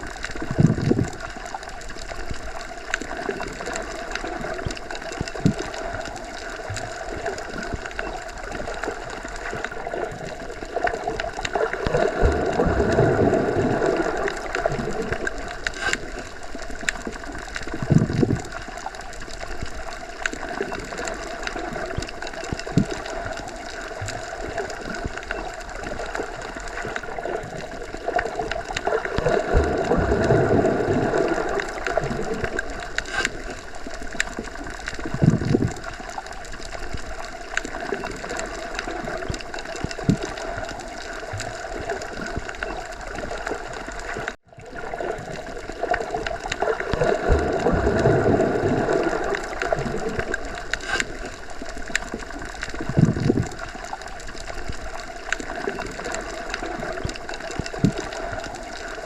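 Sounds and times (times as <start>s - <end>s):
underwater rushing gurgling water: 0.0s - 59.0s
small clicks: 14.2s - 27.0s, 31.6s - 36.9s.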